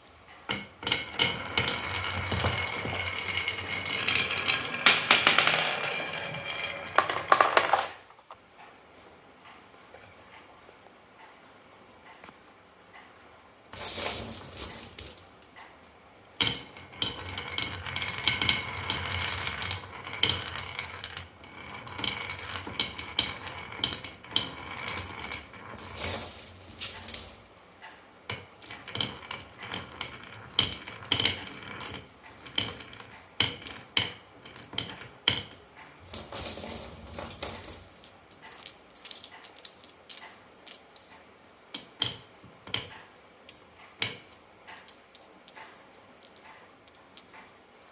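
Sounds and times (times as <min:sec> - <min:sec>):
marbles rolling and clacking on wood: 0:00.0 - 0:08.4, 0:13.7 - 0:15.6, 0:16.4 - 0:47.9.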